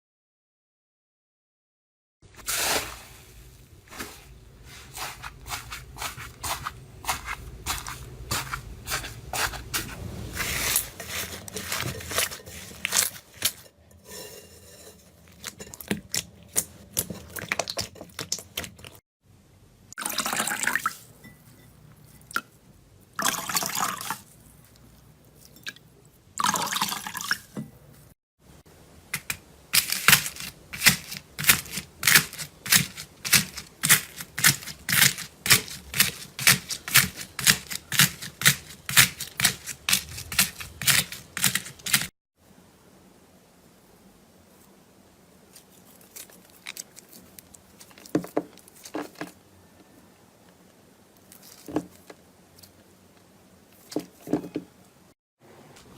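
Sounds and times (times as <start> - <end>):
wet squelching of slime: 4.0 - 13.6.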